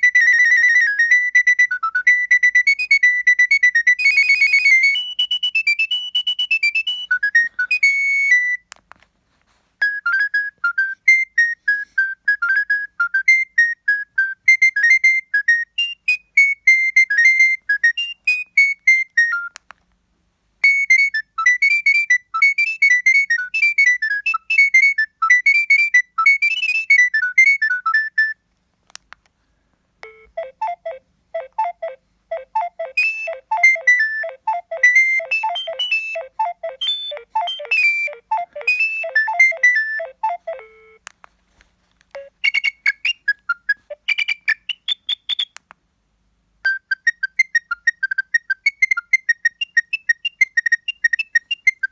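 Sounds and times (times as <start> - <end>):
electronic phone ringtone tunes: 0.0 - 8.6, 30.0 - 41.0, 42.2 - 43.0.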